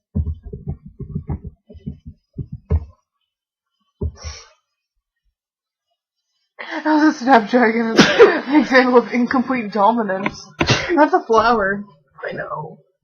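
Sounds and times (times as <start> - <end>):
short low thumps: 0.1 - 3.0.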